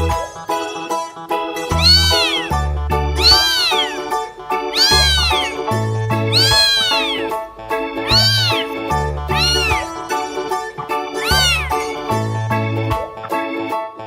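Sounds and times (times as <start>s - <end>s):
cat meowing: 1.7s - 2.6s, 3.2s - 7.4s, 8.1s - 10.0s, 11.2s - 11.9s.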